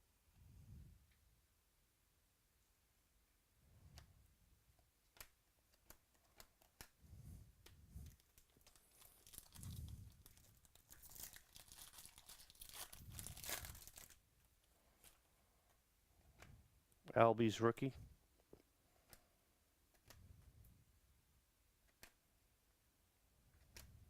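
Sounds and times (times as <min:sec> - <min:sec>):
soft clicks of cards handled: 0:03.8 - 0:11.1, 0:18.4 - 0:20.6, 0:21.8 - 0:22.2, 0:23.5 - 0:24.0
foil wrapper tearing and crinkling: 0:08.1 - 0:14.2.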